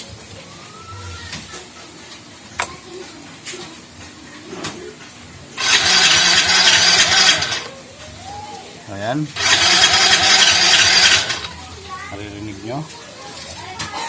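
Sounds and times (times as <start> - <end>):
scooter engine cranking: 5.6 - 7.7, 9.4 - 11.6.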